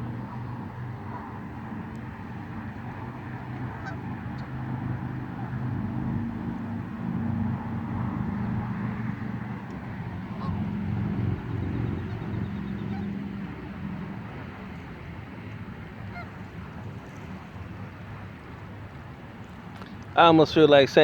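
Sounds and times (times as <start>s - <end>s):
geese honking: 3.8s - 4.0s, 10.3s - 10.6s, 12.0s - 13.2s.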